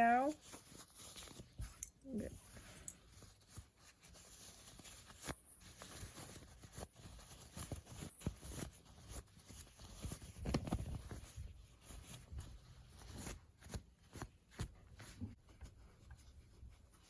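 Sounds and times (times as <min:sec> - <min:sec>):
cotton fabric rustling: 0:00.0 - 0:17.0.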